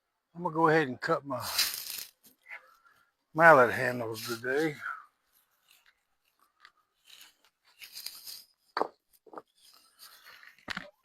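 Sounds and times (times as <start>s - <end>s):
wood scraping and rustling: 5.4s - 11.0s.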